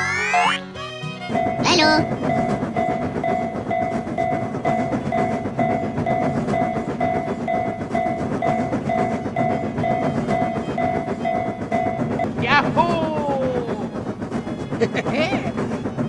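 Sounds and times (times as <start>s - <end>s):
train rumbling: 0.0s - 16.0s
railroad crossing bell ringing: 1.0s - 12.3s.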